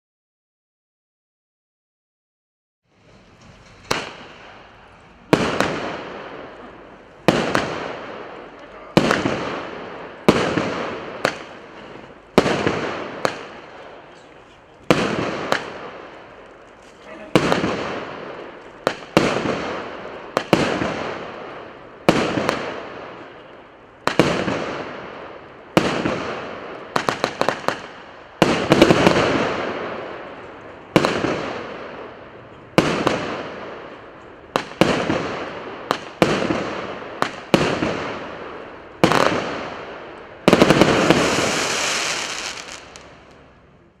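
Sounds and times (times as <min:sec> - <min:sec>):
firework cracks: 0:03.0 - 0:44.0
firework bangs: 0:03.2 - 0:44.0
hissing crackling firework burst: 0:40.5 - 0:43.4.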